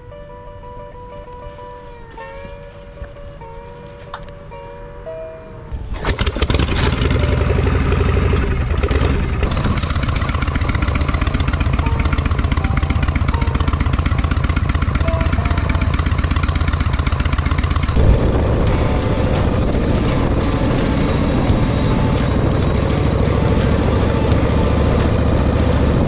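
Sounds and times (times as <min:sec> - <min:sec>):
motorcycle engine running: 0:06.0 - 0:26.0.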